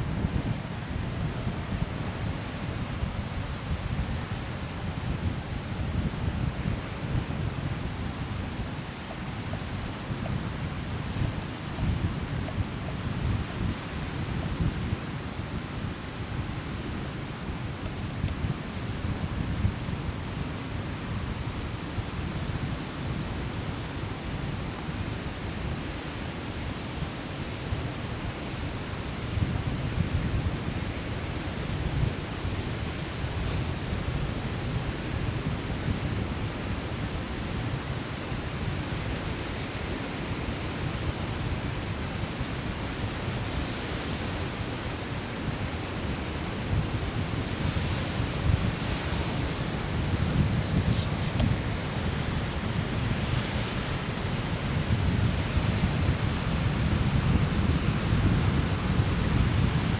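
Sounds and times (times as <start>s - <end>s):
waves on sandy shore: 0.0s - 24.0s, 37.6s - 59.9s
wind on microphone: 0.0s - 24.7s, 38.5s - 59.9s.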